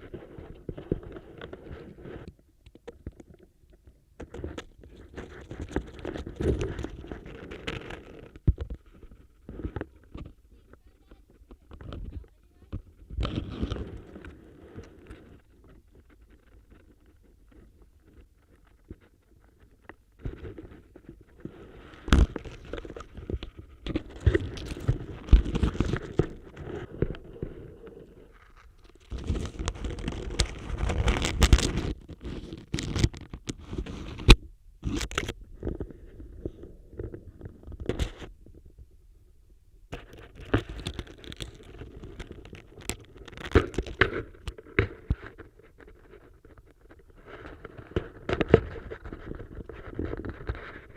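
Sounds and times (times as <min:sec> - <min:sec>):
probe scraping through leaves: 0:13.2 - 0:38.3.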